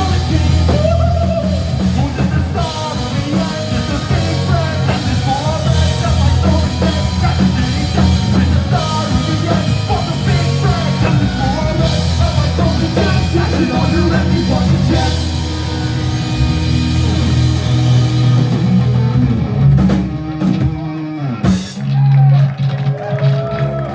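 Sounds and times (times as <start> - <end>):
person singing: 0.0 - 16.4
live pop-punk band playing: 0.0 - 23.9.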